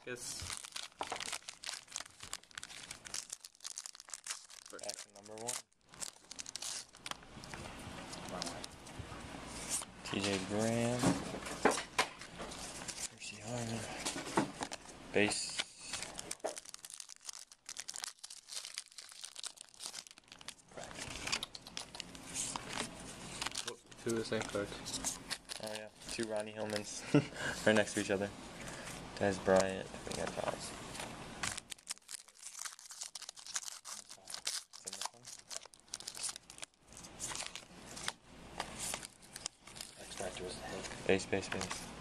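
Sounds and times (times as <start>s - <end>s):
wrapper crinkling: 0.0s - 8.9s, 11.7s - 27.1s, 29.5s - 41.9s
cards being handled: 9.5s - 27.0s, 28.6s - 41.9s.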